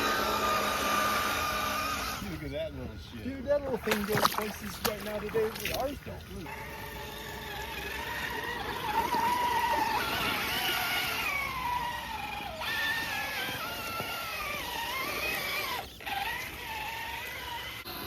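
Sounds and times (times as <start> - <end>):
toy car motor whining: 0.0 - 2.6, 6.3 - 18.0.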